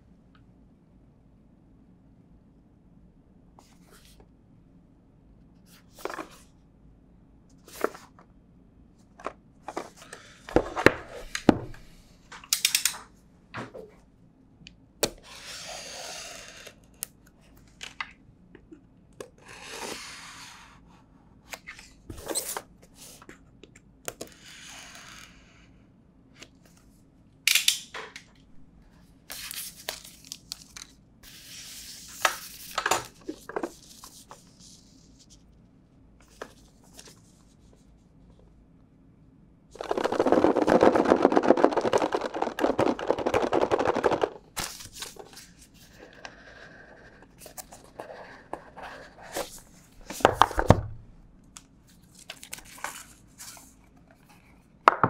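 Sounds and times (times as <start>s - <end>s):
packaging rustling: 39.8s - 45.5s.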